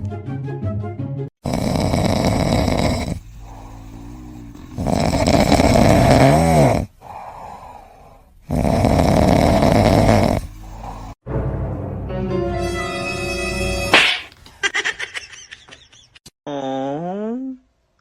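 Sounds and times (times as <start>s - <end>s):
pet snoring loudly: 1.4s - 11.2s.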